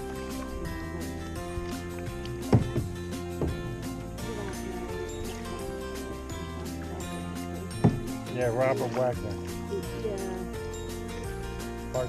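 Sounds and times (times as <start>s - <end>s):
music with sustained tones: 0.0s - 12.0s
dull low thump: 2.4s - 3.9s, 7.7s - 8.4s.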